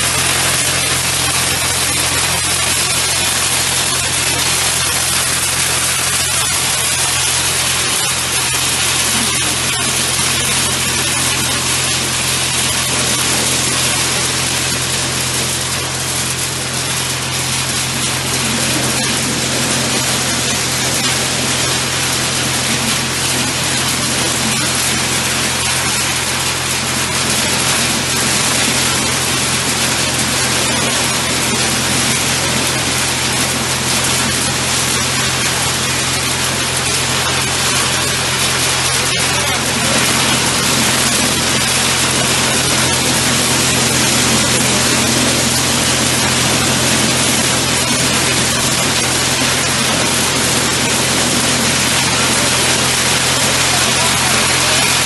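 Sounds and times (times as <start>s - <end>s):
machine crushing cones: 0.0s - 55.0s.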